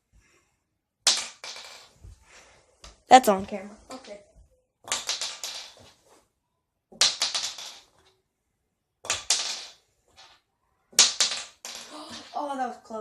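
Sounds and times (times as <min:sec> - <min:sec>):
shotgun shell landing and rattling: 0:11.0 - 0:12.4.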